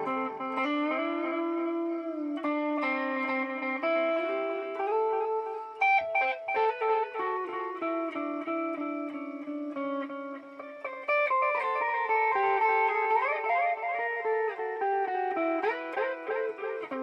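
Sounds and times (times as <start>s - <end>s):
electric guitar with delay echoes: 0.0s - 17.0s.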